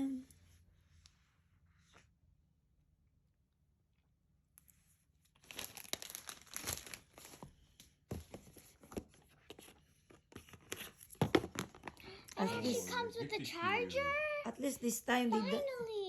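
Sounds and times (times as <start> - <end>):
packaging tearing and crinkling: 5.4 - 7.4.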